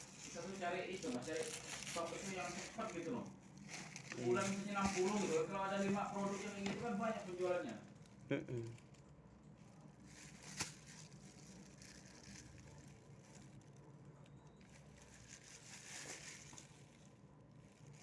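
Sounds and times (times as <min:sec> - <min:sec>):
soft rustling: 0:00.0 - 0:08.2, 0:14.6 - 0:18.0.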